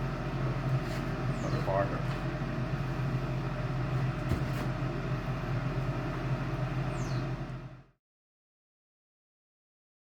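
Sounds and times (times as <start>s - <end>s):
low mechanical hum: 0.0s - 8.0s.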